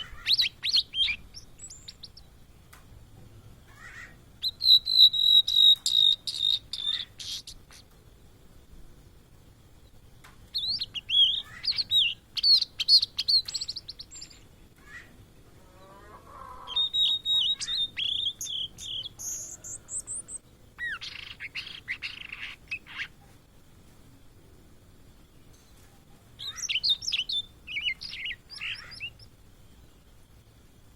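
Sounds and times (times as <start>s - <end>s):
bird whistling and warbling: 0.0s - 2.2s, 3.7s - 7.9s, 10.5s - 15.1s, 16.6s - 23.2s, 26.4s - 29.3s.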